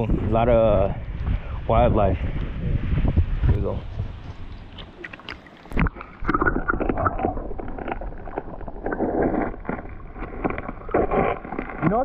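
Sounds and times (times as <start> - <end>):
water splashing around wading legs: 4.6 - 12.0.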